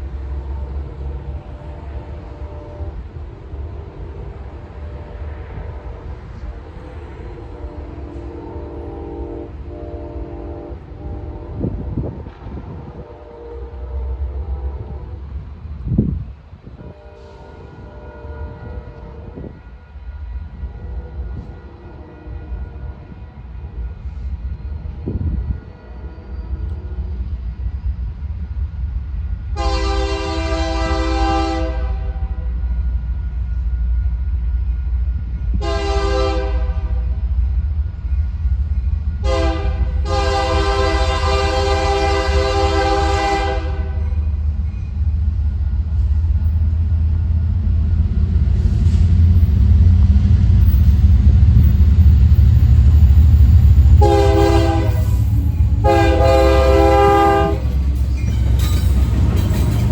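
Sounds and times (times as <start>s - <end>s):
deep train rumble: 0.0s - 59.9s
train air horn blasts: 0.3s - 15.4s, 16.8s - 23.2s, 29.6s - 32.6s, 35.5s - 37.2s, 39.2s - 44.0s, 53.8s - 57.8s.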